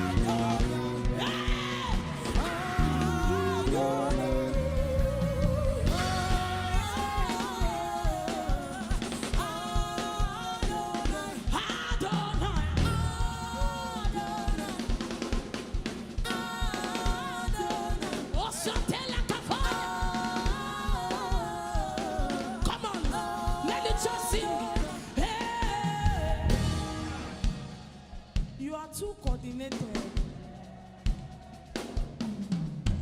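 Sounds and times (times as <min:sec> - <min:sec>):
drum kit beat: 0:00.0 - 0:33.0
gospel band music: 0:00.0 - 0:33.0.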